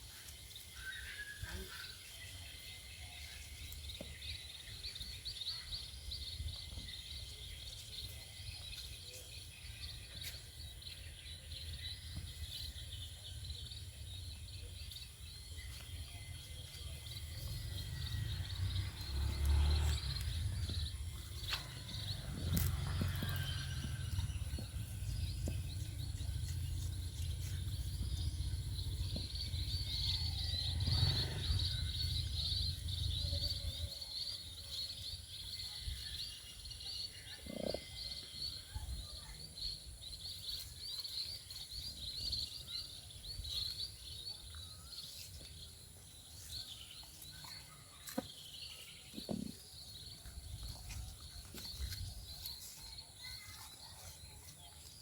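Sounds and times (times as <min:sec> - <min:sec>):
low rumble: 0:17.2 - 0:33.3.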